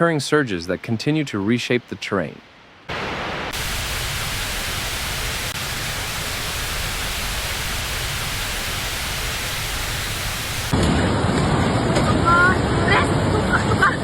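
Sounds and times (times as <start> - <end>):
broadband rushing noise: 2.9 - 10.8.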